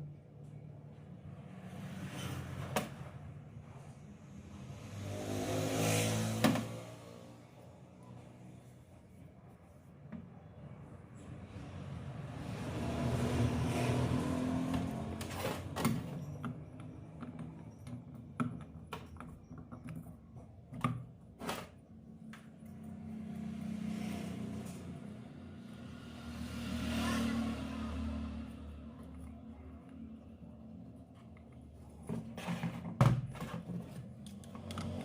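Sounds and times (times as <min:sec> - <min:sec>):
motorcycle engine revving: 0:04.5 - 0:07.5, 0:12.4 - 0:15.8, 0:22.9 - 0:28.9, 0:34.4 - 0:35.0.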